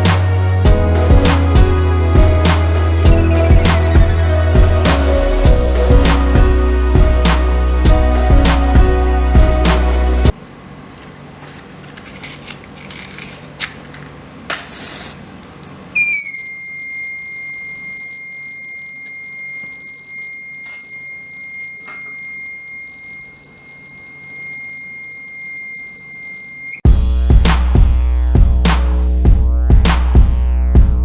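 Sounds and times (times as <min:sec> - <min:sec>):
high-pitched alarm buzzer: 0:16.0 - 0:26.8.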